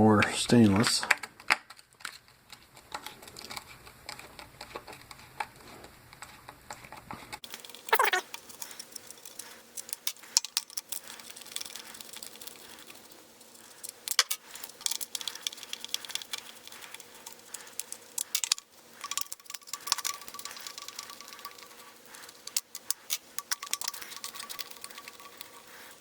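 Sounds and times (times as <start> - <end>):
screwdriver clicks and rattles: 7.4 - 26.0.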